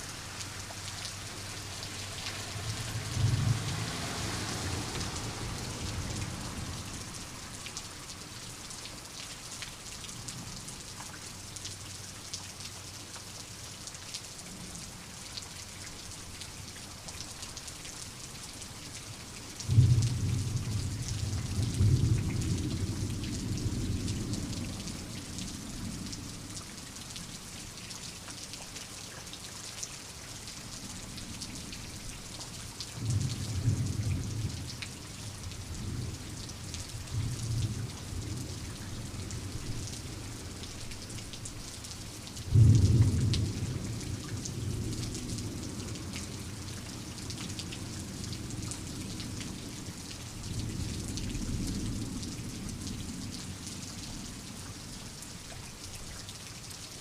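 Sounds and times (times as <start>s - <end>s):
steady rain: 0.0s - 57.0s
thunder claps and rumbles: 3.0s - 6.2s, 42.5s - 45.5s.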